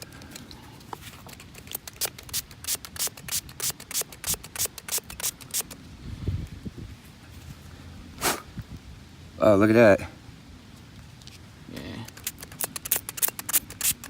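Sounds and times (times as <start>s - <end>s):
spray bottle squirts: 1.8s - 5.8s, 12.1s - 14.0s.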